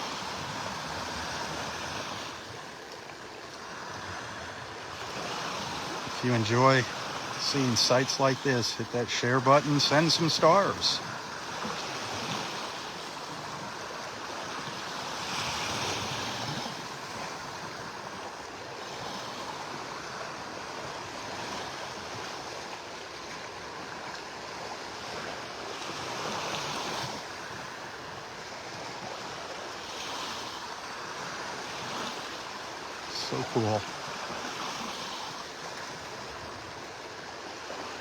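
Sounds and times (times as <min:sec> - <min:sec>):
small waves washing onto beach: 0:00.0 - 0:38.0.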